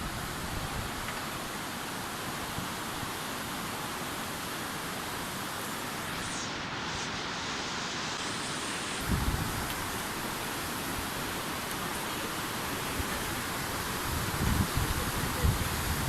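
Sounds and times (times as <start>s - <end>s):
outdoor rushing hiss: 0.0s - 16.0s
wind buffeting microphone: 9.0s - 9.9s, 13.0s - 16.0s.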